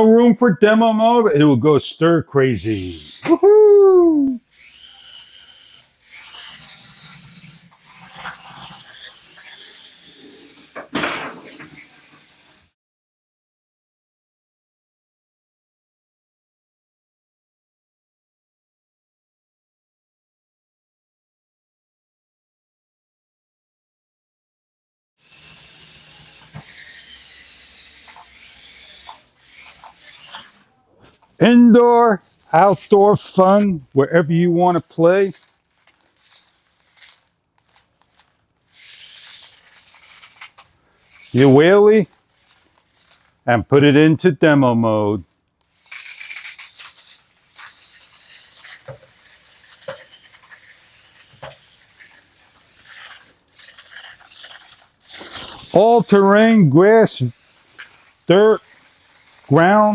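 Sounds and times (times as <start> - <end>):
toy truck rattling and scrabbling: 2.4 - 3.4, 4.4 - 12.7, 25.2 - 43.6, 45.2 - 59.9
small electric motor whine: 4.4 - 12.7, 25.2 - 31.2, 35.2 - 43.4, 45.7 - 55.8, 57.3 - 59.8
faint steady hiss: 54.4 - 59.9.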